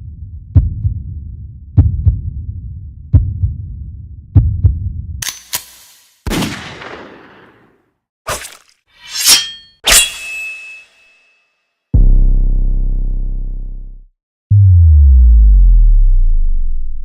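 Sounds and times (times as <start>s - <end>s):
heartbeat thumps: 0.4s - 5.1s.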